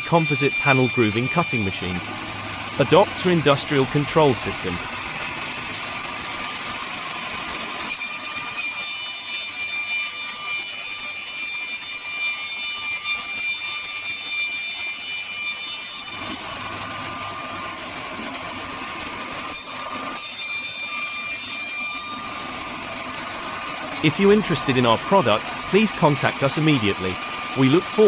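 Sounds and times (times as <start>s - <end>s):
cutting machine running: 0.0s - 8.6s, 15.9s - 20.8s, 21.4s - 28.0s
high steady machine whine: 0.0s - 28.0s.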